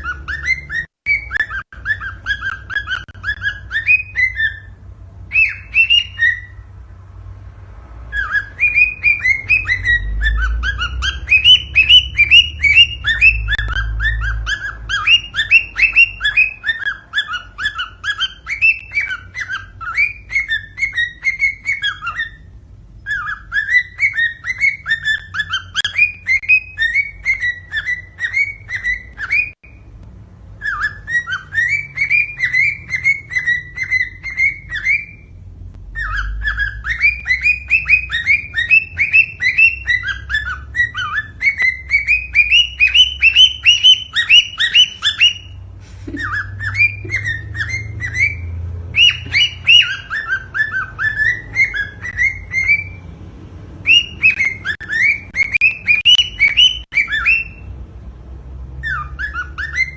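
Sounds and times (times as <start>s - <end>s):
cockatiel whistling: 0.0s - 6.7s, 8.1s - 53.1s, 53.8s - 57.7s, 58.8s - 59.9s.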